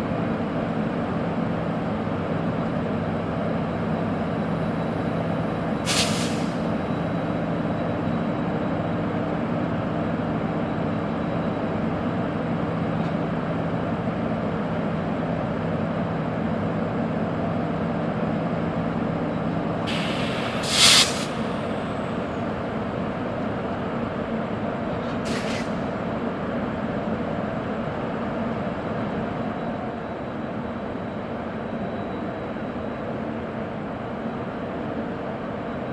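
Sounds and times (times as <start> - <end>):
electric locomotive machinery hum: 0.0 - 35.9
compressed air hissing: 5.9 - 6.6, 19.9 - 22.0.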